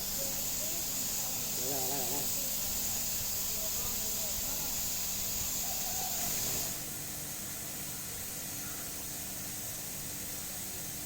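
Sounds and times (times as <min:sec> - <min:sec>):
high-pitched hiss: 0:00.0 - 0:06.9.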